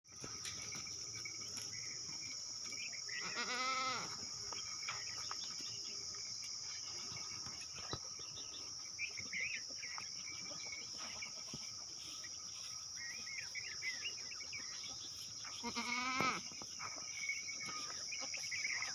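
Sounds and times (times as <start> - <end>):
insects droning: 0.1 - 18.9
goat bleating: 3.2 - 4.2, 15.6 - 16.4.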